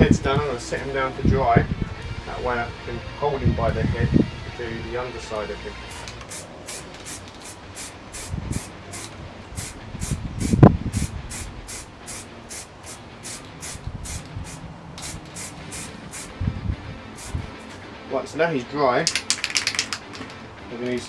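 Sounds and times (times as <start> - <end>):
aerosol can spraying: 5.9 - 16.4, 17.1 - 17.8.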